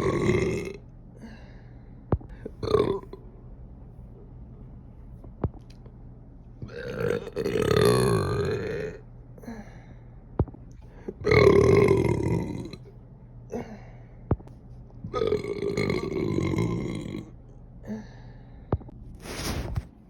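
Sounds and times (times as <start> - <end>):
woman burping loudly: 0.0 - 0.8, 2.6 - 3.2, 6.7 - 9.0, 11.2 - 12.8, 15.1 - 17.3.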